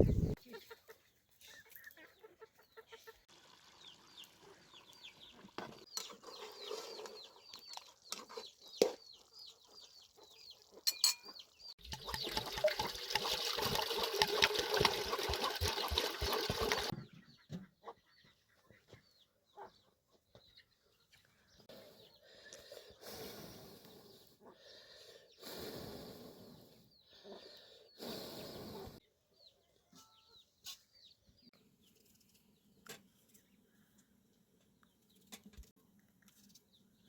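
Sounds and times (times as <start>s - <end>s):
birds chirping: 0.0s - 0.7s.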